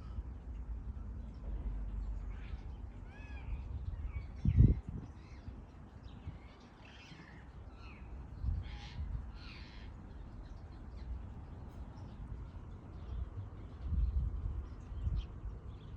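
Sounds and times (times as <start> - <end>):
birds chirping and calling: 2.0 - 15.9
steady low rumble: 10.3 - 15.9.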